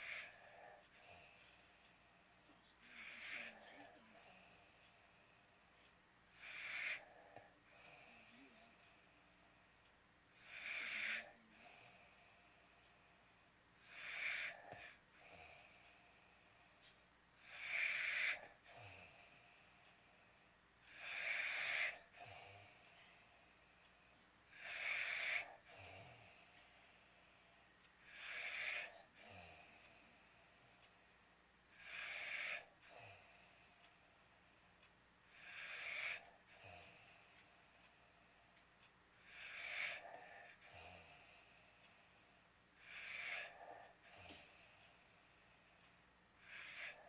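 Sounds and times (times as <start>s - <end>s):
faint breath: 0.0s - 9.7s, 10.4s - 38.6s
person snoring: 2.8s - 4.4s, 17.4s - 19.2s, 20.9s - 22.8s, 24.5s - 26.4s, 42.8s - 44.6s.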